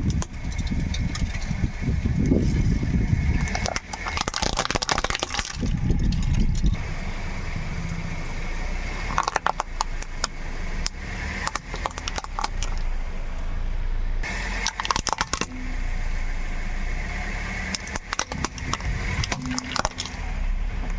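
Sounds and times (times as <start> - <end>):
car running slowly: 0.0 - 20.9
tyres crunching brittle objects: 2.3 - 6.9, 8.9 - 13.0, 14.2 - 15.9, 17.5 - 20.9.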